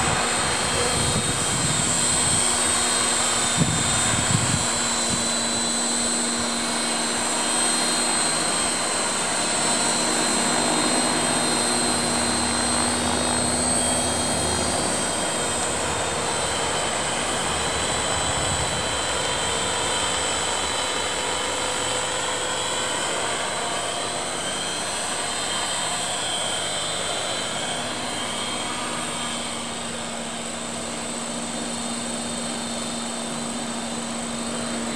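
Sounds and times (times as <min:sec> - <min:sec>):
wind noise on microphone: 0:00.0 - 0:05.6, 0:17.8 - 0:19.8
model helicopter motor whine: 0:00.0 - 0:34.9
rush of spinning rotor blades: 0:00.0 - 0:34.9.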